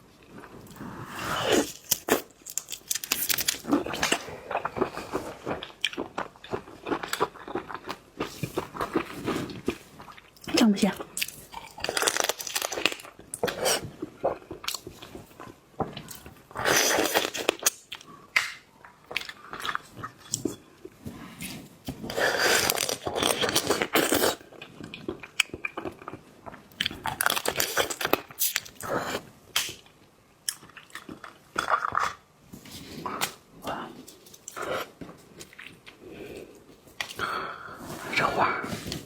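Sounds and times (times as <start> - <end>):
wet chewing and crunching: 1.5 - 20.7, 22.1 - 32.3.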